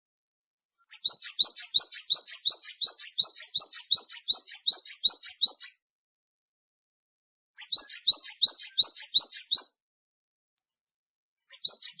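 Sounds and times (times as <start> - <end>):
bird whistling two-note phrases: 11.5 - 12.0.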